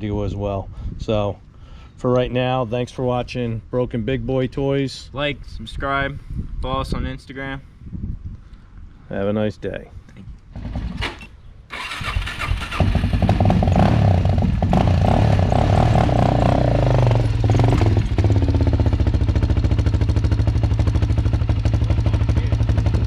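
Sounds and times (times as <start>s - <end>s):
quad engine starting and revving: 10.6s - 23.0s.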